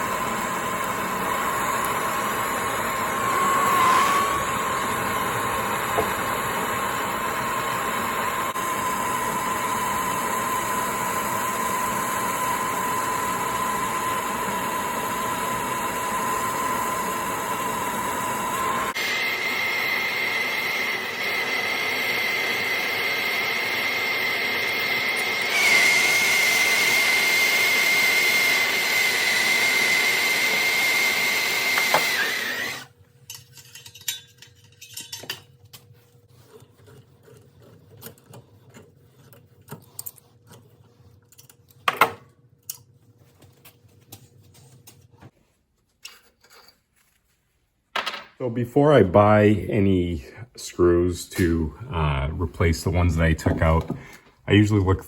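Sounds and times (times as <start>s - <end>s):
power tool whining: 0.0s - 32.9s.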